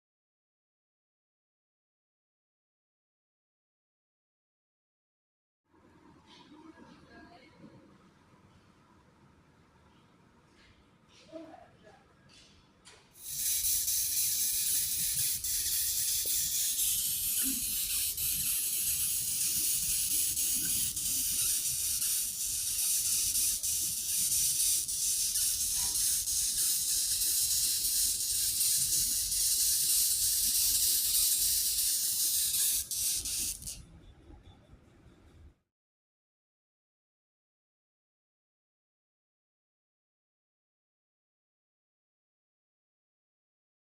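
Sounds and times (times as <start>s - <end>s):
beetle hissing buzz: 13.2s - 33.8s.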